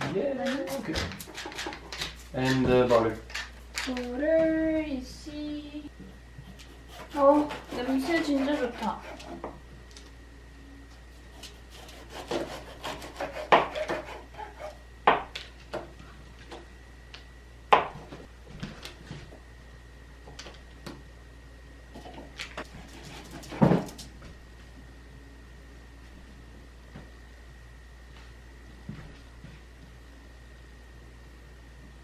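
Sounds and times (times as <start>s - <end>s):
utensils scraping and rubbing: 0.4s - 4.0s, 6.5s - 9.4s.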